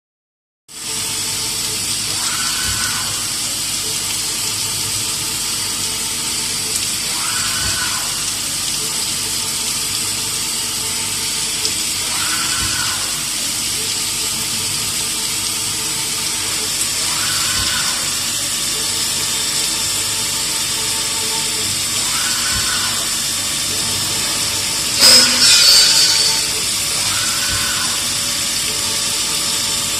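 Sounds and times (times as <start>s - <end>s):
coolant and spindle hiss: 0.7s - 29.9s
sharp machining noise: 0.8s - 29.9s
short machine tone: 8.8s - 29.9s.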